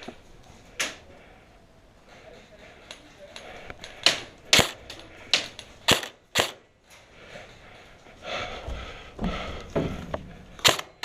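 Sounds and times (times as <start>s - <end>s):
airsoft gun shots: 4.5s - 4.8s, 5.9s - 6.6s, 10.6s - 11.0s.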